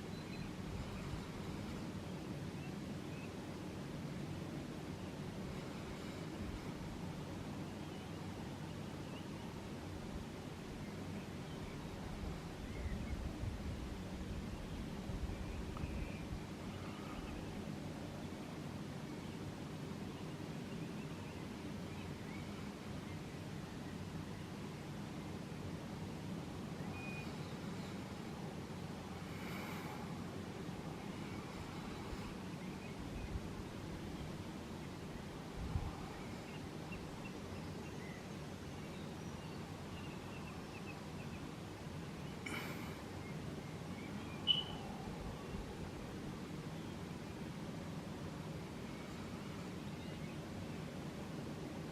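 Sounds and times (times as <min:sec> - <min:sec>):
faint bird chirps: 0:00.0 - 0:03.4, 0:14.5 - 0:19.4, 0:26.7 - 0:41.5, 0:42.2 - 0:45.8, 0:48.7 - 0:50.9
faint high chirps: 0:44.1 - 0:45.6.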